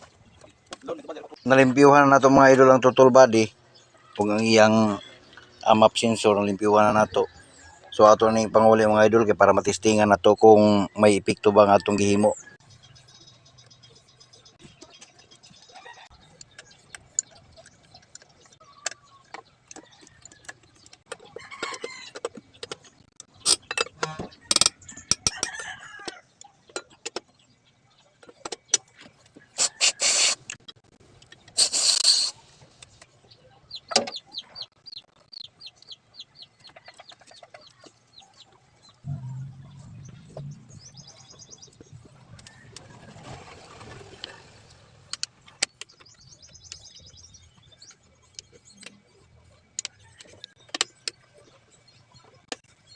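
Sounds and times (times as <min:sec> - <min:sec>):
hand tools clicking and knocking: 0:16.4 - 0:27.3
rooster crowing: 0:25.3 - 0:26.3.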